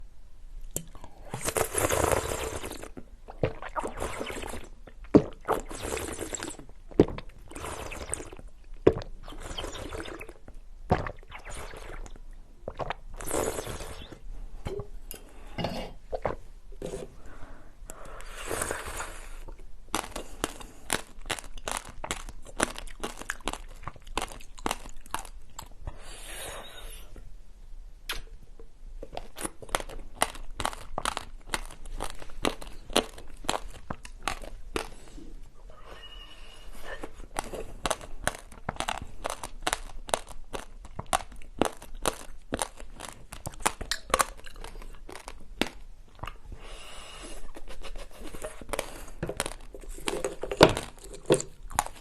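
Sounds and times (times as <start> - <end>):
slurping and sipping: 1.1 - 14.3, 18.1 - 21.1
loud snaps: 28.1 - 28.4.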